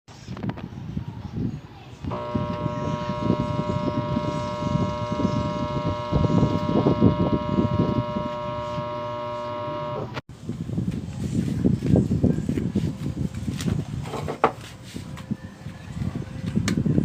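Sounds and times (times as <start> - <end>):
low rumbling: 2.1 - 10.2
washing machine motor humming: 2.1 - 10.2.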